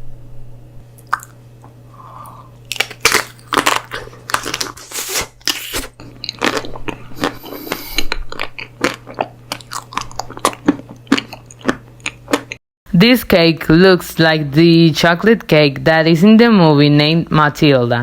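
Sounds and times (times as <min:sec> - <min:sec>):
crunching and chewing: 0:01.0 - 0:12.6.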